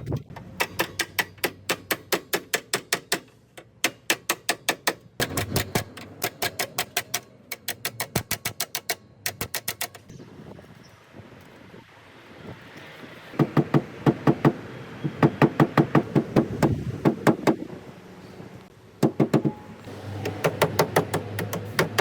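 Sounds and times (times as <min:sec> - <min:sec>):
sharp evenly spaced taps: 0:00.6 - 0:10.1.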